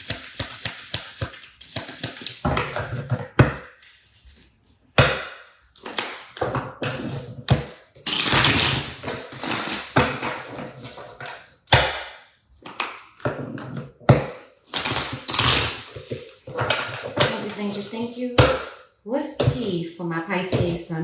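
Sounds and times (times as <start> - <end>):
cards shuffling: 0.0 - 3.1.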